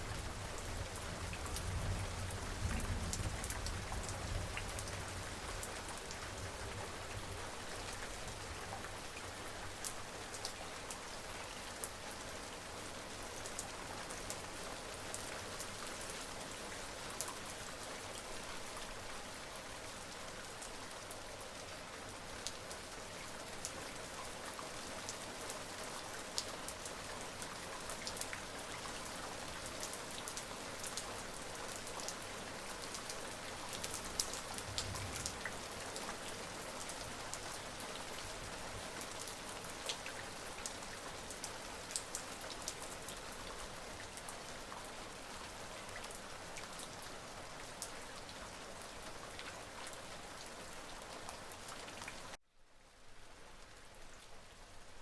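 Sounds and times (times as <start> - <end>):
rain drops ticking: 0.0 - 12.1, 13.0 - 52.4.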